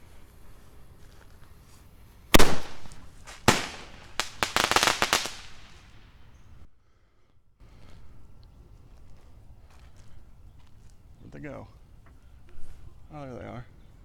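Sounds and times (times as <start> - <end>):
firework bangs: 2.4 - 6.1
firework crackling pops: 2.4 - 6.2.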